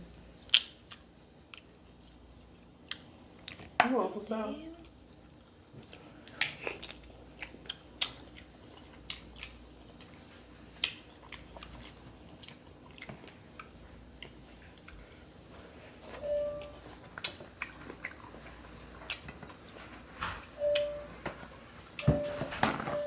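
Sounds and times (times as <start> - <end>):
wet chewing and mouth smacks: 0.4 - 3.8, 4.8 - 15.1, 16.6 - 20.1.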